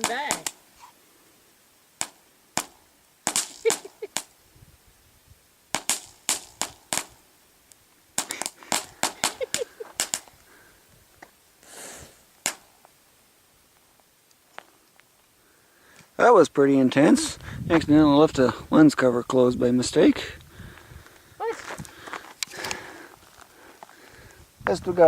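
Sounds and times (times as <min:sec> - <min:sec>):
fireworks bangs and pops: 0:00.0 - 0:00.7, 0:02.0 - 0:04.4, 0:05.7 - 0:07.2, 0:08.2 - 0:10.4, 0:12.4 - 0:12.9
rushing fireworks crackle: 0:00.0 - 0:01.0, 0:01.8 - 0:13.1.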